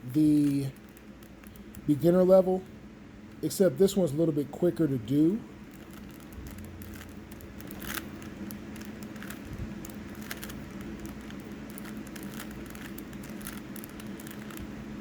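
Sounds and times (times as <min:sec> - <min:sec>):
steady low hum: 0:00.0 - 0:15.0
puzzle cube clicking: 0:05.7 - 0:14.8.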